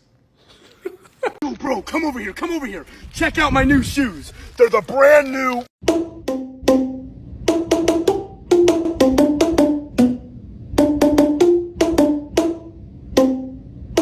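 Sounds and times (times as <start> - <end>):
wooden pitched percussion tune: 5.8 - 14.0.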